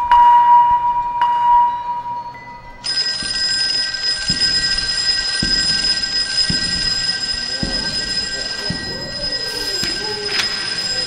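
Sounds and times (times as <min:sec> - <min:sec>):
alarm bell ringing: 0:00.0 - 0:11.0.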